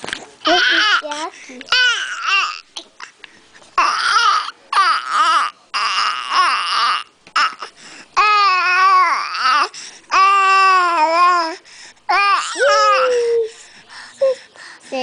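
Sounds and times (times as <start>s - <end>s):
baby squealing: 1.7s - 2.7s.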